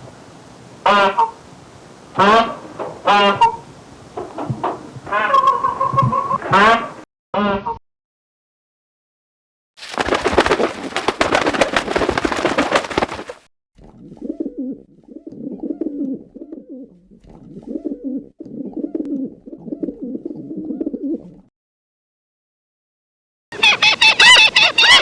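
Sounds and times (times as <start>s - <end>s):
pigeon cooing: 5.2s - 6.5s, 14.0s - 21.5s
wings rustling flurry: 9.8s - 13.4s.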